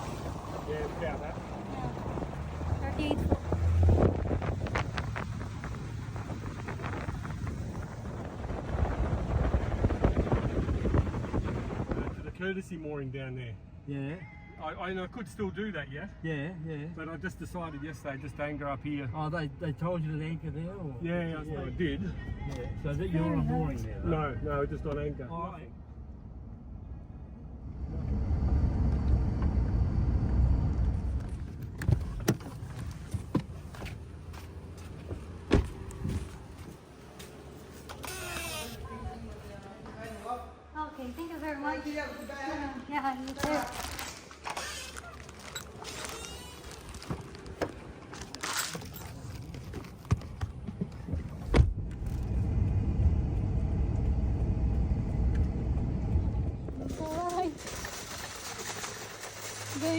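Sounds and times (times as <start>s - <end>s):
vehicle passing: 0.0s - 12.2s
car engine rumbling: 0.0s - 12.5s, 20.1s - 39.8s, 43.4s - 59.9s
loud thump: 35.4s - 35.9s.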